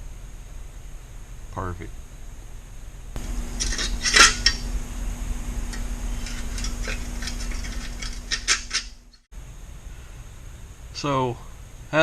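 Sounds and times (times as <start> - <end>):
metal tools clinking and clattering: 3.6 - 4.7, 5.7 - 9.1.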